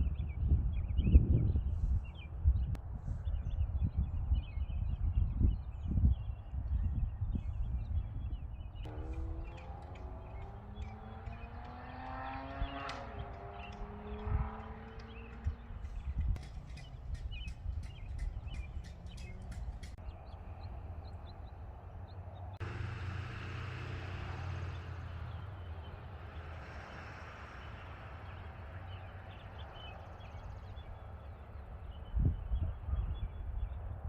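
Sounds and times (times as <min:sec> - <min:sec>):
small birds chirping: 0:00.0 - 0:34.0
low outdoor rumble: 0:06.6 - 0:34.0.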